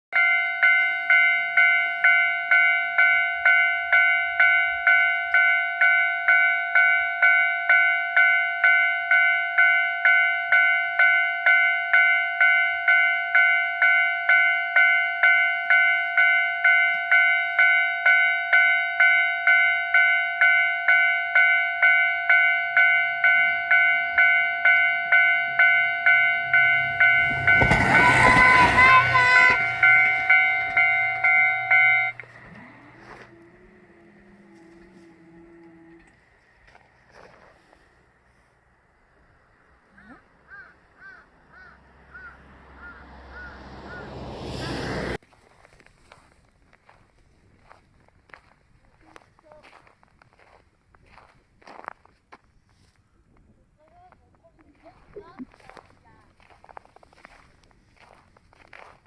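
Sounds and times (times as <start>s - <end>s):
level-crossing warning bell: 0.1s - 36.4s.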